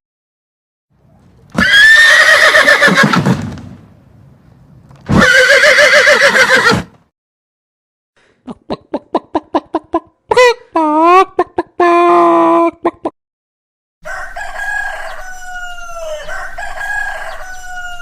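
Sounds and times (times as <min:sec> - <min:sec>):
horse whinnying: 0:01.6 - 0:03.3, 0:05.1 - 0:06.9.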